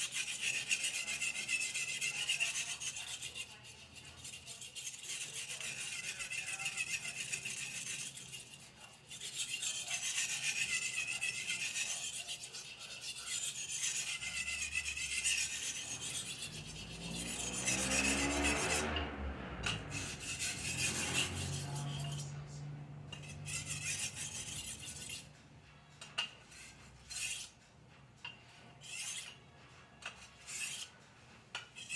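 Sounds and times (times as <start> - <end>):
knife rasping on sharpening stone: 0.0 - 25.4, 26.0 - 27.7, 28.3 - 31.9
low sound with shifting pitch: 16.3 - 23.5.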